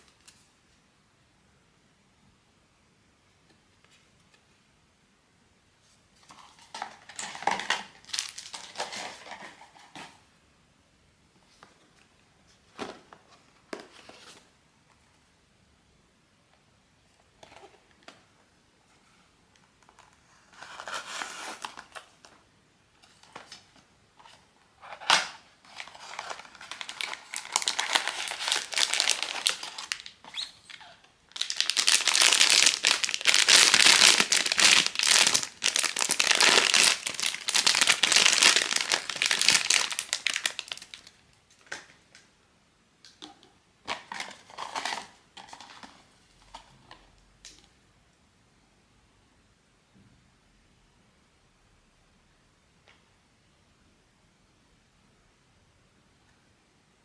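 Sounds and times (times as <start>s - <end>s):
packaging crinkling and tearing: 6.6s - 9.9s, 24.8s - 41.9s, 43.9s - 46.6s.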